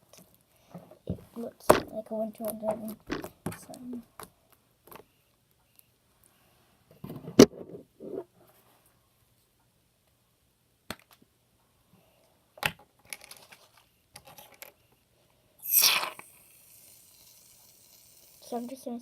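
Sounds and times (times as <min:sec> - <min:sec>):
rustling and scraping: 0:13.0 - 0:14.8.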